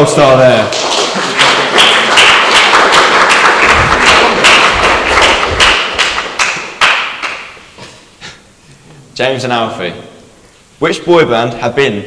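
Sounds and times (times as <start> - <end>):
audience applauding: 0.0 - 7.6.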